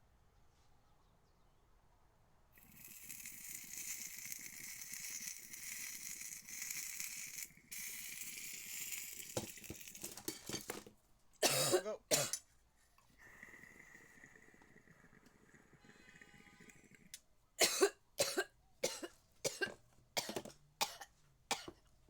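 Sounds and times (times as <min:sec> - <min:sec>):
concentrate sizzling on hot nail: 0:02.6 - 0:10.0
person coughing: 0:11.4 - 0:12.4, 0:17.6 - 0:21.7.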